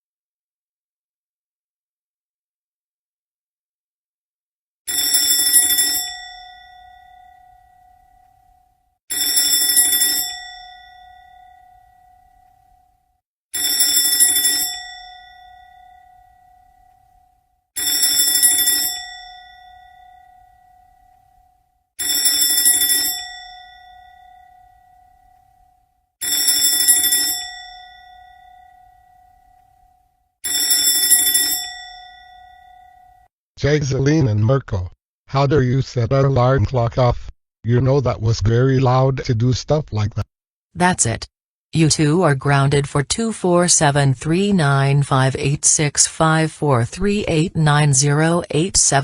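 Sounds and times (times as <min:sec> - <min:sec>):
alarm clock bell ringing: 0:04.9 - 0:33.3.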